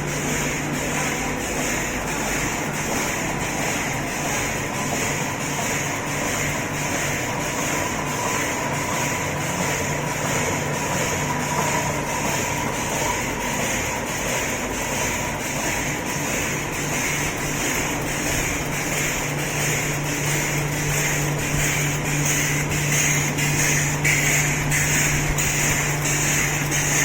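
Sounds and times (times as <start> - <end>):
packing machine running: 0.0 - 27.0
steady hum: 0.0 - 27.0.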